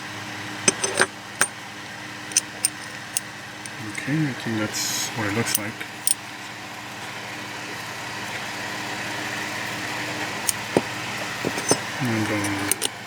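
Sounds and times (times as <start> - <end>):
steady engine-like hum: 0.0 - 13.0
small metal parts clicking: 0.7 - 1.6, 2.2 - 4.0, 10.4 - 13.0.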